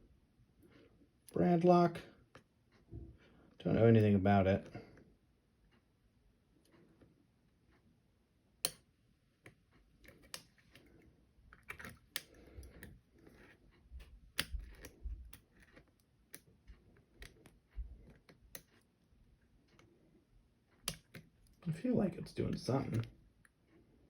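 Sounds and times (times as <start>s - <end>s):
lock pick clicking and scraping: 8.6s - 18.9s, 20.8s - 21.6s.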